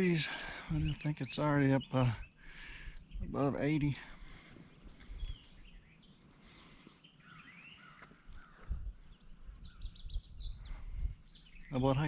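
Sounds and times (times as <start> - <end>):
wild birds chirping and whistling: 0.0 - 12.0
wind rumble on microphone: 2.9 - 3.6, 4.2 - 5.8, 7.8 - 12.0.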